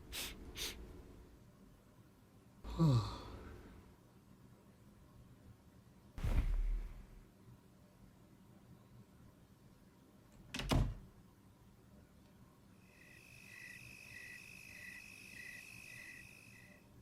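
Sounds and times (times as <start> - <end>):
electronic emergency alarm beeping: 13.0 - 16.8.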